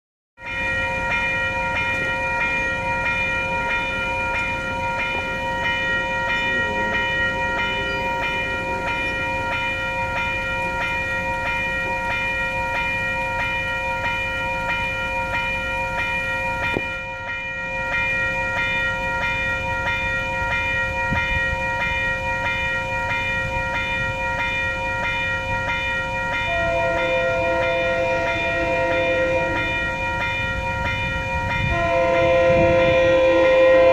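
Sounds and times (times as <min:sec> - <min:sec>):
train air horn blasts: 0:06.3 - 0:09.3, 0:26.5 - 0:30.2, 0:31.6 - 0:33.9.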